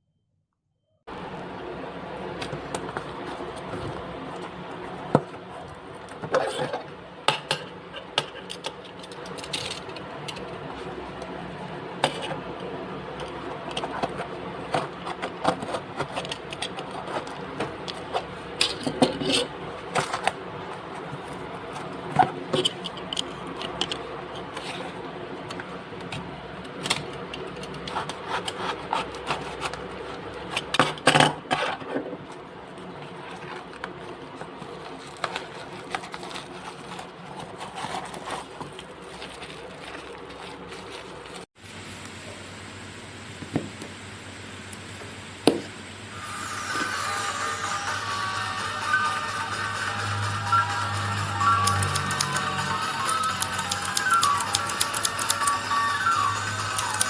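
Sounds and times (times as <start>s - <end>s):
plastic things rubbed and scraped: 13.2s - 25.8s, 26.7s - 41.5s, 48.9s - 57.0s
sharp clicks: 50.9s - 55.7s, 56.5s - 57.0s.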